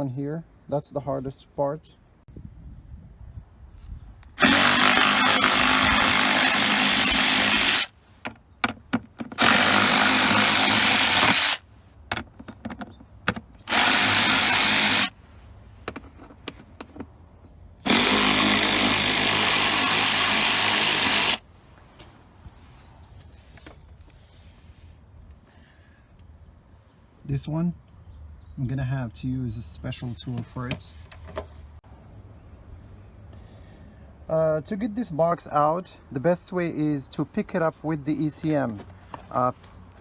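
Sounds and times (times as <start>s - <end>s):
power drill running in bursts: 4.4s - 7.9s, 9.4s - 11.6s, 13.7s - 15.1s, 17.8s - 21.4s
handling clicks and knocks: 8.2s - 9.4s, 12.1s - 13.7s, 15.8s - 17.6s.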